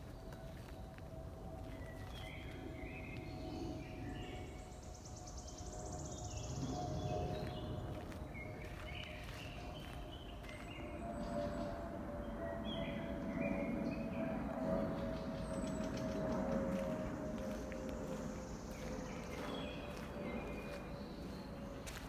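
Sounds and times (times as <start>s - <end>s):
footsteps on forest floor: 0.0s - 2.6s, 7.3s - 10.8s, 16.0s - 22.0s
birds chirping: 0.0s - 11.8s, 12.5s - 22.0s.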